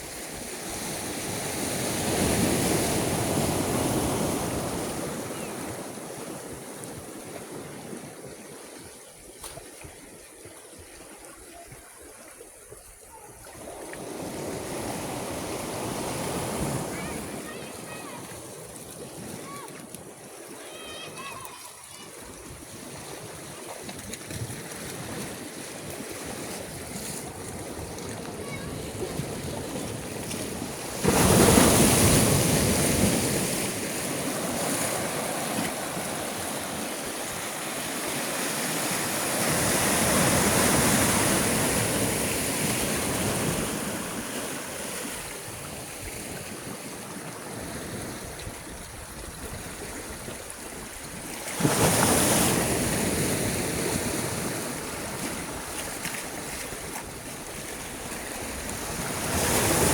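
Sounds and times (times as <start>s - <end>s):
sea waves crashing: 0.0s - 9.0s, 13.3s - 59.9s
surf hiss: 25.4s - 59.9s.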